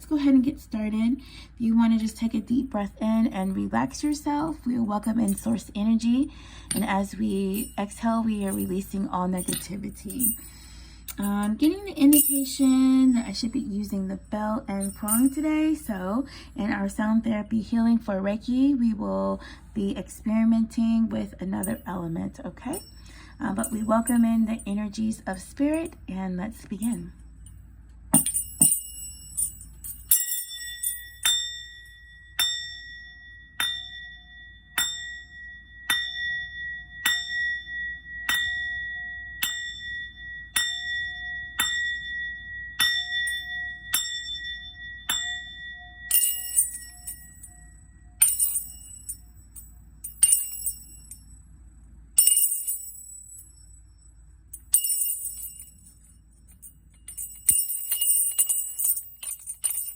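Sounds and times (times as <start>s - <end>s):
shaken jingling bells: 6.7s - 13.7s, 14.8s - 16.2s, 22.8s - 24.6s, 54.6s - 59.9s
small ritual bell struck: 28.1s - 51.2s.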